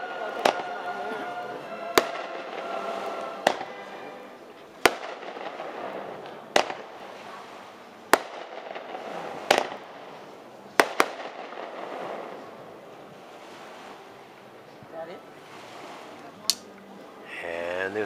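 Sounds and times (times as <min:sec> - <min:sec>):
fireworks bangs: 0:00.0 - 0:01.2, 0:01.8 - 0:04.1, 0:04.8 - 0:07.4, 0:08.1 - 0:12.6
steady background rush: 0:00.0 - 0:18.0.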